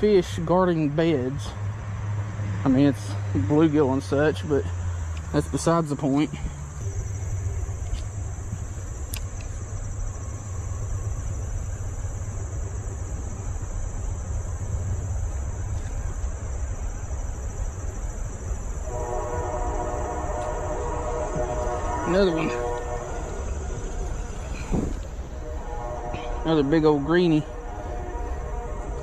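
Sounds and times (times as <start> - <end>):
high-pitched insect chorus: 0.0 - 29.0
distant train horn: 18.4 - 29.0.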